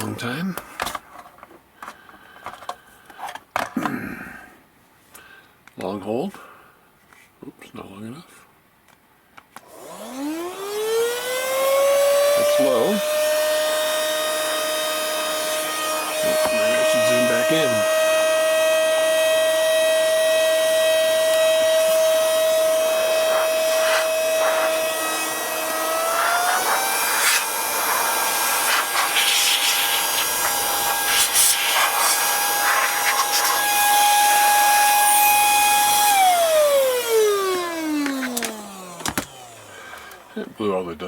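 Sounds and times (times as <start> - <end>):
vacuum motor whine: 9.7 - 40.3
rushing air: 23.0 - 33.8.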